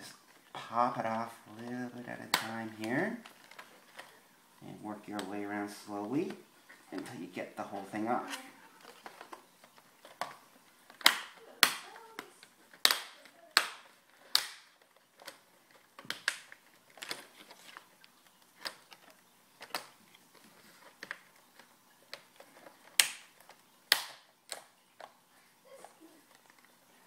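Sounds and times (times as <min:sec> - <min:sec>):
plastic clips snapping loose: 0:08.3 - 0:20.0, 0:20.9 - 0:25.2.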